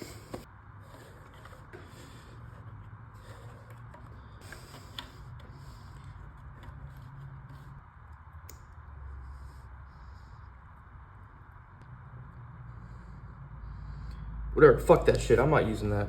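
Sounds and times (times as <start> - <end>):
clicks and scraping of plastic parts: 0.0 - 7.8
low steady hum: 0.0 - 16.0.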